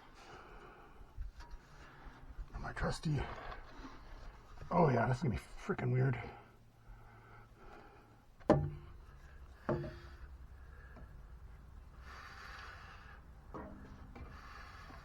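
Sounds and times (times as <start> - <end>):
sharp metal knocks with ring: 8.5 - 9.0.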